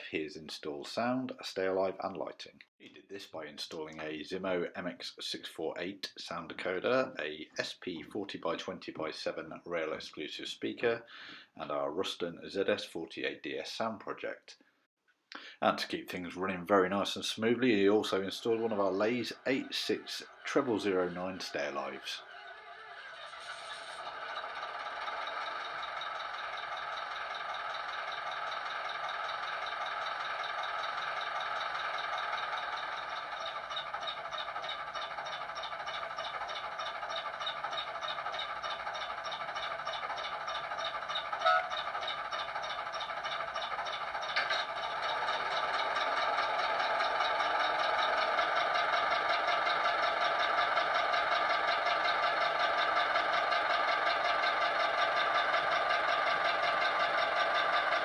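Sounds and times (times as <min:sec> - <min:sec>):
model diesel engine beat: 0:24.0 - 0:58.0
brief tone: 0:41.4 - 0:41.7.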